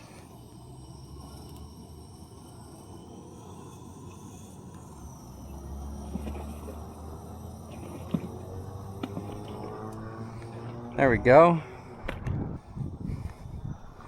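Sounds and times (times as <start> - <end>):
wind buffeting microphone: 8.2 - 14.0.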